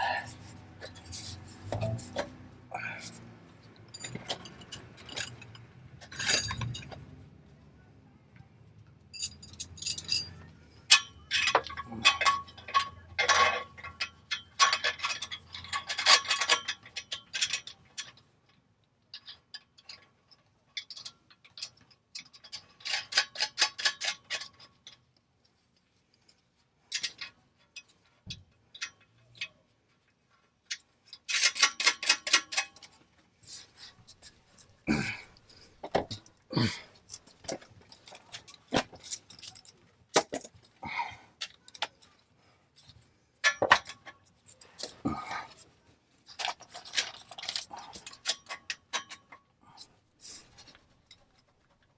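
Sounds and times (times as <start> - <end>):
metal tools clinking: 0.1 - 3.2, 3.8 - 7.1, 9.1 - 18.2, 30.7 - 51.8.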